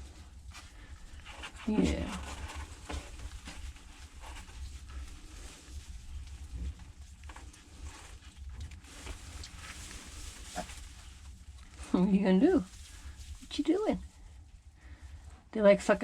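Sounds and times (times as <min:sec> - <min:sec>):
piglets rustling and clicking: 0:01.1 - 0:11.8.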